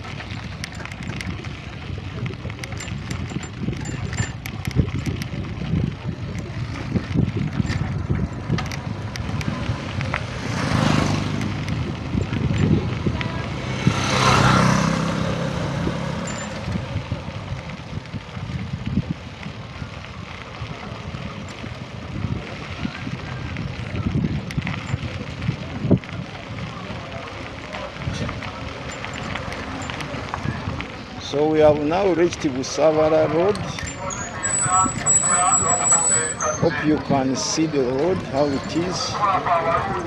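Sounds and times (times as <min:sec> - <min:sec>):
road vehicle rumble: 0:00.0 - 0:40.0
vehicles passing close by: 0:00.0 - 0:40.0
knocks and rattles: 0:02.6 - 0:05.2, 0:28.9 - 0:30.1.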